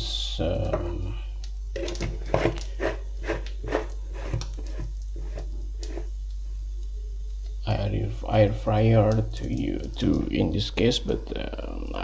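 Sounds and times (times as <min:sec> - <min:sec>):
steady low hum: 0:00.0 - 0:12.0
utensil clicks and scrapes in pan: 0:01.8 - 0:06.1.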